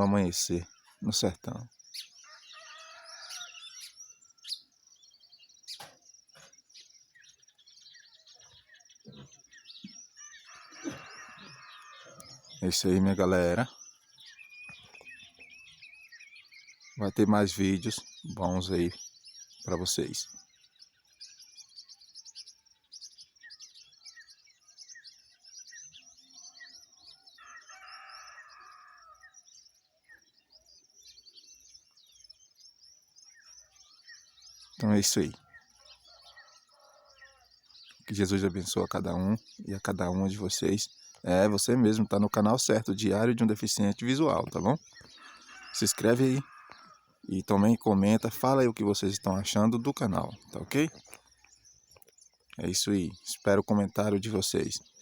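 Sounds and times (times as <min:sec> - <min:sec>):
birds chirping and trilling: 0:00.0 - 0:55.0.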